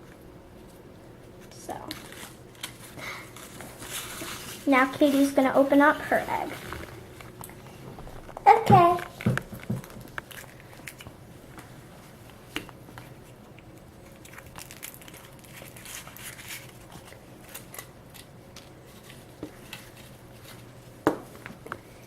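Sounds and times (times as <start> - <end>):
foil wrapper crinkling: 1.9 - 11.1, 13.6 - 20.8.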